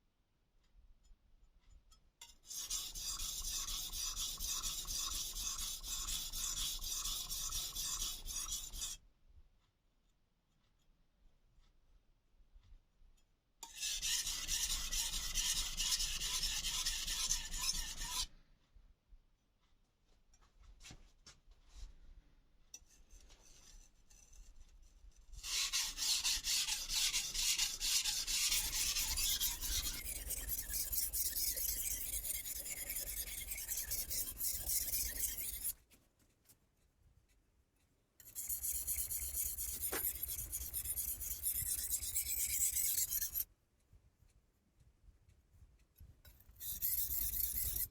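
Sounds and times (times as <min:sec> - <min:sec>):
knife scraping on whetstone: 0:02.5 - 0:09.0, 0:13.6 - 0:18.3, 0:25.4 - 0:35.8, 0:38.2 - 0:43.5, 0:46.3 - 0:47.9.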